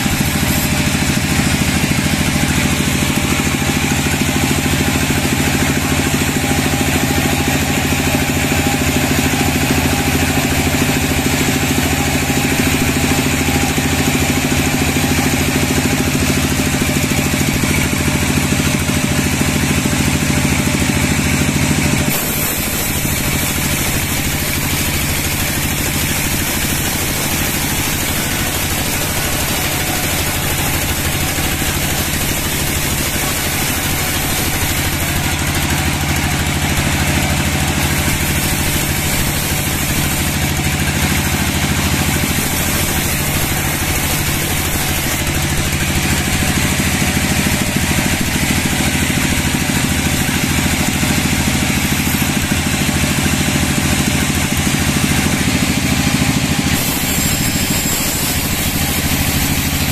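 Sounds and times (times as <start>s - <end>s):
sawmill machinery droning: 0.0s - 59.9s.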